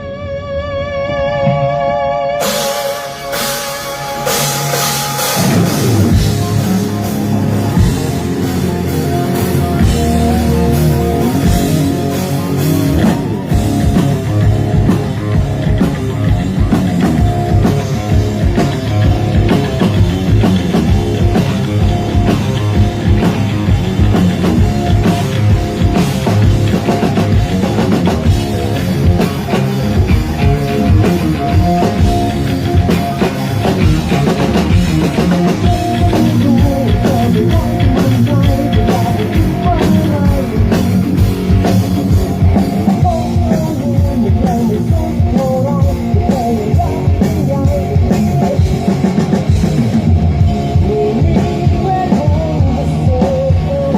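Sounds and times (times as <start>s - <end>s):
rock band playing loudly: 0.0s - 53.9s
drum kit beat: 2.4s - 53.9s.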